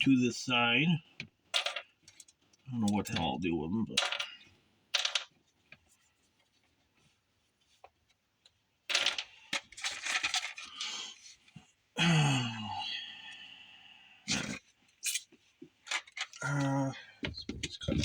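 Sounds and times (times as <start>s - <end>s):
small plastic parts clattering: 1.5s - 5.9s, 8.9s - 11.0s, 15.0s - 18.0s.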